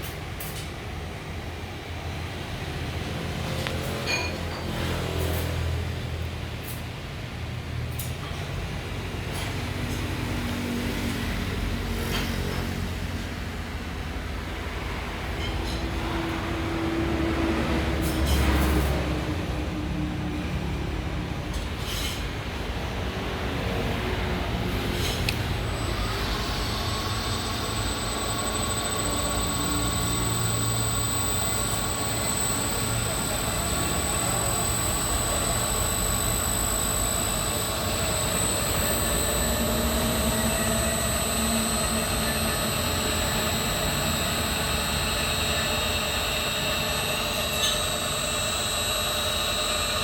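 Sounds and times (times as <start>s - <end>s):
mechanical running noise with hum: 0.0s - 50.0s
faint high whine: 25.3s - 50.0s
machinery rumble: 25.3s - 50.0s
steady hum: 25.3s - 50.0s.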